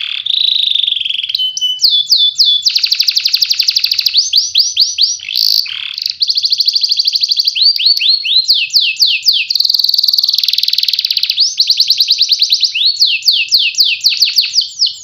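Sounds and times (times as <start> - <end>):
canary singing: 0.0 - 15.0.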